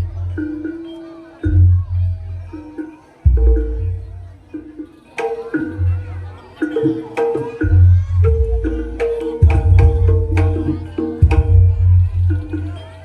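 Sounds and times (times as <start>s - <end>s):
deep bass: 0.0s - 0.4s, 1.5s - 2.5s, 3.3s - 4.4s, 7.7s - 12.8s
ringing metallophone notes: 0.0s - 13.0s.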